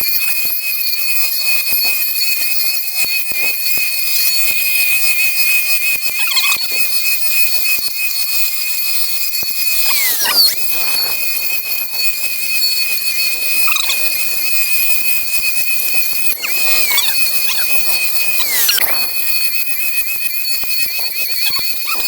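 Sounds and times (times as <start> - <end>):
blade cutting grass and reeds: 9.8 - 19.9
strimmer motor whining: 9.8 - 20.3.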